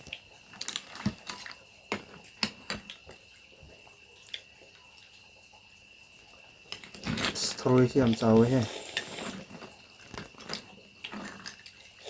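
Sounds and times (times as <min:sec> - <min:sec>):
water dripping: 0:00.0 - 0:12.0.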